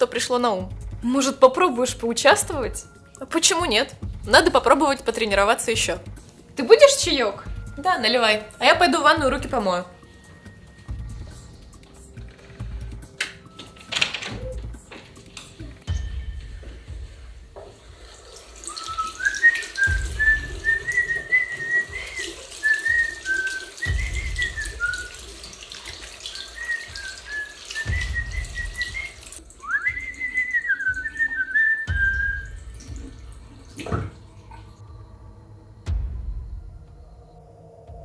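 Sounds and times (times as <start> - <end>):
sink tap running: 11.2 - 34.3
person whistling a tune: 18.7 - 25.3, 26.4 - 32.9.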